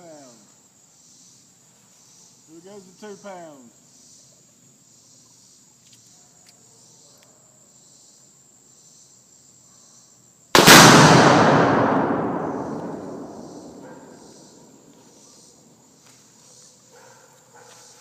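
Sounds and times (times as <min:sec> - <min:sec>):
crickets chirring: 0:00.0 - 0:10.6, 0:11.6 - 0:18.0
explosion blast with rumble: 0:10.6 - 0:14.4.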